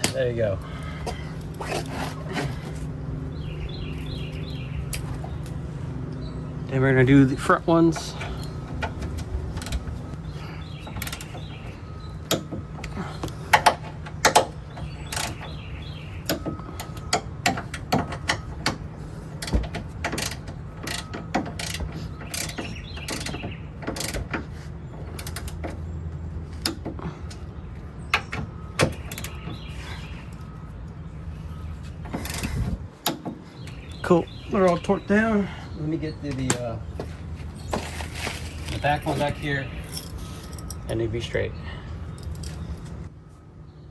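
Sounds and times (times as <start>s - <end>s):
ratcheting torque wrench clicking: 8.4s - 9.9s, 11.0s - 11.5s, 13.5s - 15.5s, 19.4s - 24.3s, 25.1s - 25.6s, 29.0s - 29.4s, 32.2s - 33.2s.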